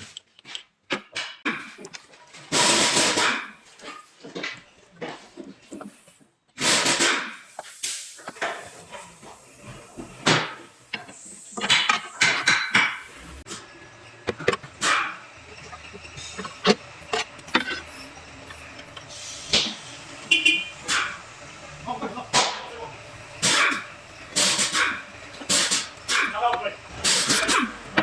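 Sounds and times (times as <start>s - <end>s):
noisy bursts: 7.9s - 28.0s
metallic knocks and clanks: 11.6s - 13.6s.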